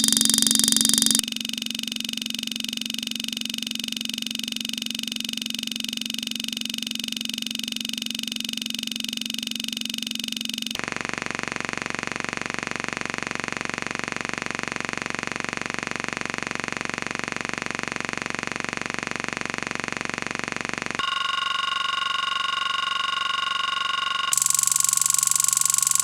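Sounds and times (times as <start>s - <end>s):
buzzing electronic tone: 0.0s - 1.2s, 21.0s - 26.0s.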